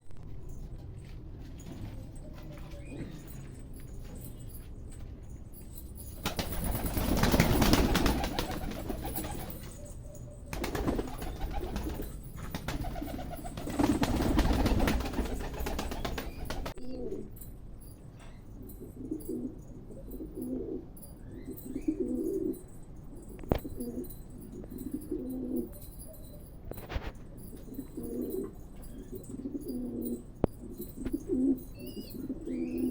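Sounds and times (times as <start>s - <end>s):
rustling and wing flapping: 6.0s - 9.9s, 10.5s - 16.8s.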